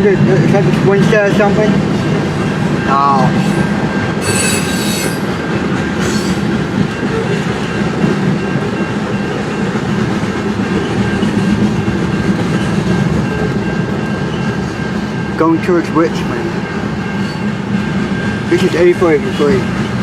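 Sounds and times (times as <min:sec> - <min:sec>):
train wheels clattering on rails: 0:00.0 - 0:20.0
thin high tone: 0:02.4 - 0:05.3.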